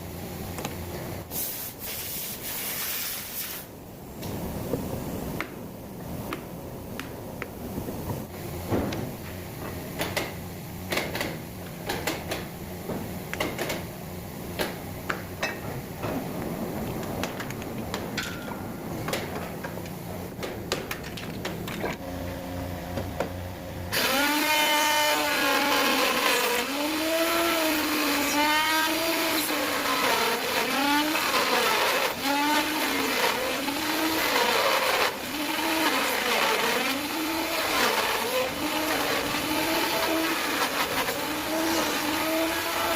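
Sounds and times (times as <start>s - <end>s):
power tool cutting wood: 23.9s - 42.9s.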